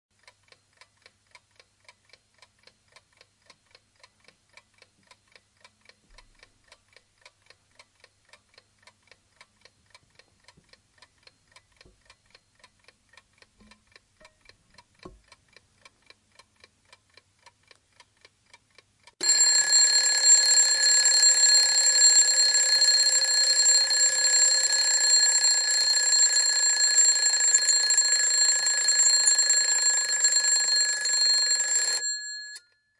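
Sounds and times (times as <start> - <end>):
alarm clock ticking: 5.6 - 32.9
alarm clock bell ringing: 19.2 - 32.9.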